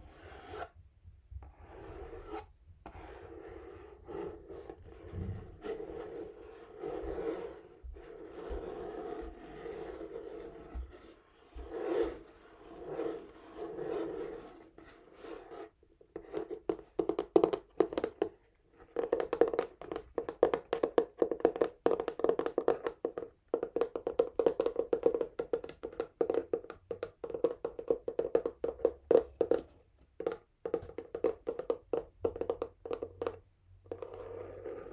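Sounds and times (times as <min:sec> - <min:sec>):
fingernails scratching on cardboard: 0:00.1 - 0:00.7, 0:01.6 - 0:16.5, 0:33.9 - 0:34.9
fingers tapping on cardboard: 0:16.2 - 0:34.9.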